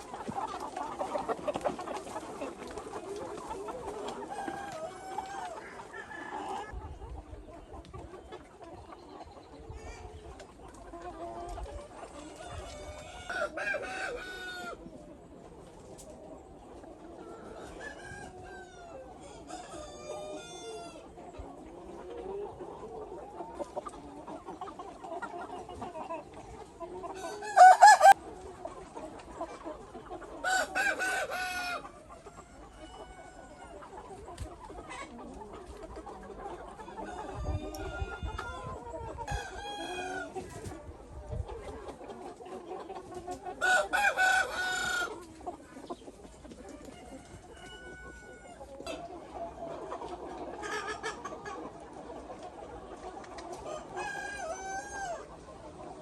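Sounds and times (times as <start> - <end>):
chickens clucking: 0.0 - 56.0
loud chicken calls: 27.1 - 28.2, 30.3 - 35.2, 43.1 - 49.0, 53.3 - 55.4.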